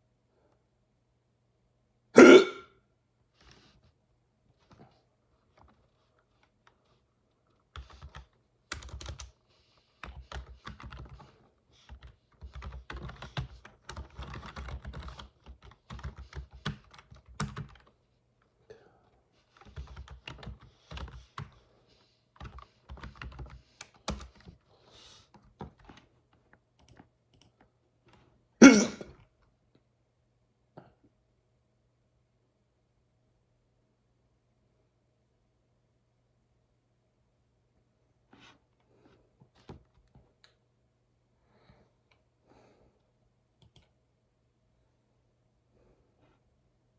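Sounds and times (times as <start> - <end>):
loud hiccup: 2.2 - 2.8, 28.6 - 29.1
typing on computer keyboard: 7.6 - 17.9, 19.5 - 21.6, 22.4 - 24.6, 25.3 - 27.7, 43.6 - 43.9.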